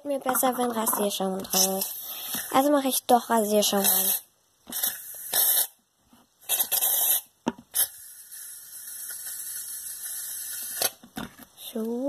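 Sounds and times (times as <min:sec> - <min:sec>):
aerosol can hissing: 0:01.5 - 0:02.7, 0:03.7 - 0:05.8, 0:06.4 - 0:11.0.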